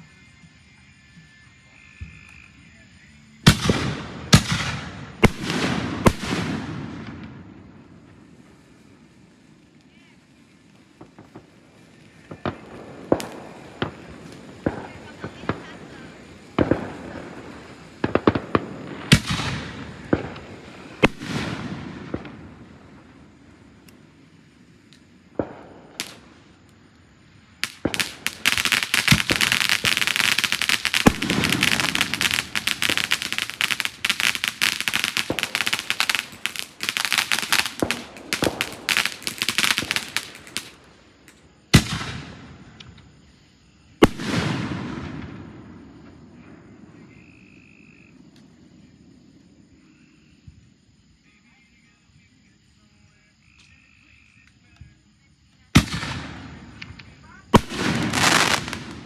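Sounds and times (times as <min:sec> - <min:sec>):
firework bangs: 0:02.0 - 0:09.8, 0:10.6 - 0:47.8, 0:55.7 - 0:59.0
rapid firecracker crackling: 0:02.0 - 0:47.4, 0:55.7 - 0:59.0.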